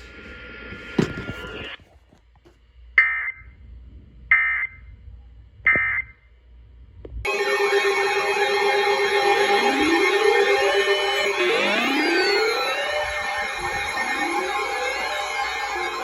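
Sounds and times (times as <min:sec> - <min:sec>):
sustained electronic multi-tone sound: 0:07.3 - 0:16.0
digital data bursts: 0:07.9 - 0:16.0.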